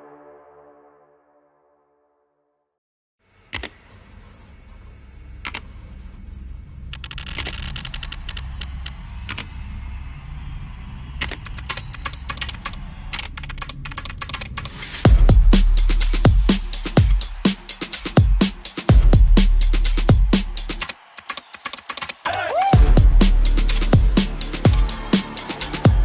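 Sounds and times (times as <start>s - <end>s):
mechanical keyboard typing: 11.6s - 14.7s
loud low boom: 15.1s - 17.1s.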